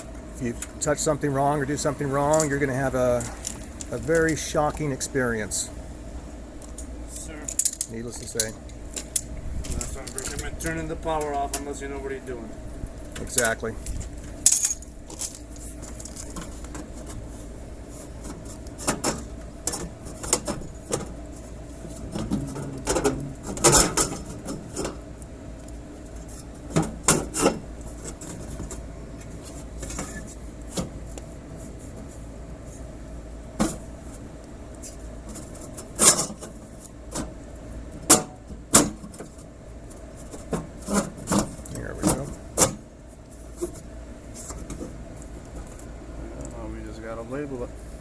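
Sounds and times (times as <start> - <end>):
steady low hum: 0.0 - 48.0
tools and hardware clicking and rattling: 6.6 - 10.6, 13.2 - 17.1.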